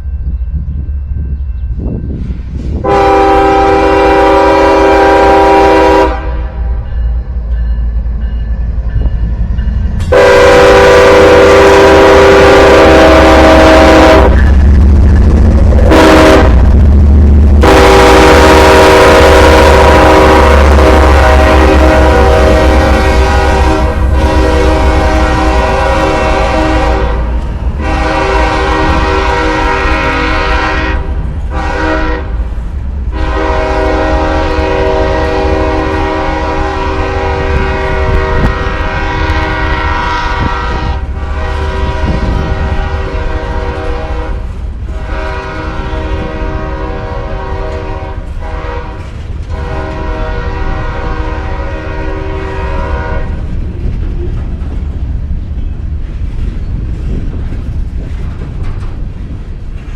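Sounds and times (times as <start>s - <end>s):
low train rumble: 0.0s - 59.9s
locomotive air horn blasts: 2.7s - 6.9s, 10.0s - 14.5s, 15.8s - 16.7s, 17.6s - 32.5s, 33.1s - 53.5s.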